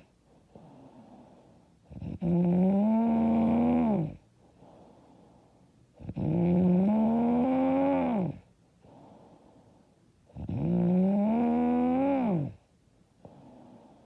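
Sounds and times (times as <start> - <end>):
soft breathing: 0.0 - 1.9, 4.2 - 6.0, 8.4 - 10.3, 13.0 - 14.0
woman snoring loudly: 1.9 - 4.2, 6.0 - 8.4, 10.4 - 12.6.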